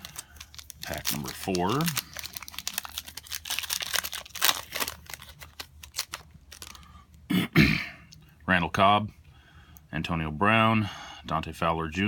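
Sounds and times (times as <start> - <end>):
person speaking: 0.0 - 2.6
wrapper tearing and crinkling: 0.0 - 6.9.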